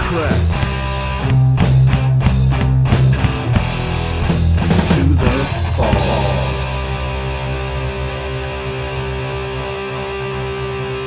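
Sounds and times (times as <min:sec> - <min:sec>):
distorted guitars: 0:00.0 - 0:11.0
bass low notes: 0:00.5 - 0:08.6
drum hits: 0:04.9 - 0:07.3.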